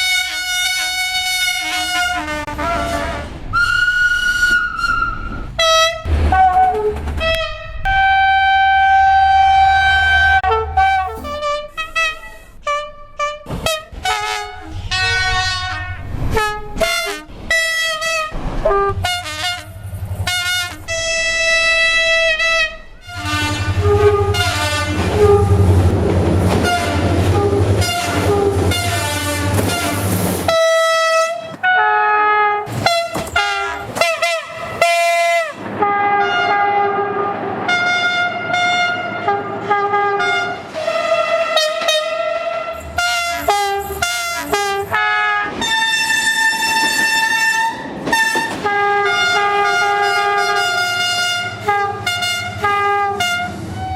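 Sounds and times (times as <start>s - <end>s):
passing train rumble: 0.0s - 53.9s
train horn blasts: 0.0s - 53.9s.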